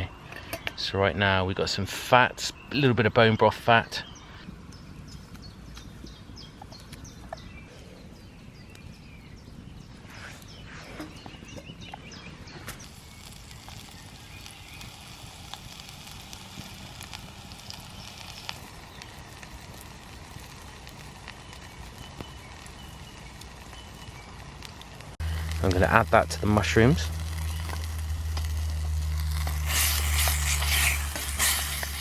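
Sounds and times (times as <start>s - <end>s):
birds chirping: 0.0s - 32.0s
fat sizzling and crackling in a pan: 12.8s - 32.0s.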